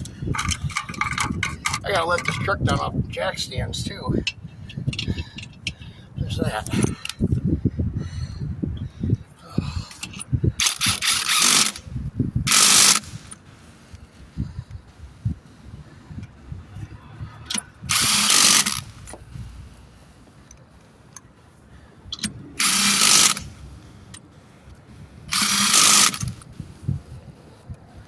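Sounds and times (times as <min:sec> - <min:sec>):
handling noises: 0:00.0 - 0:03.0
impact wrench bursts: 0:00.3 - 0:02.9, 0:09.9 - 0:11.9, 0:12.5 - 0:13.7, 0:17.4 - 0:20.1, 0:22.1 - 0:24.2, 0:25.0 - 0:26.6
dull low thumps: 0:14.2 - 0:18.2.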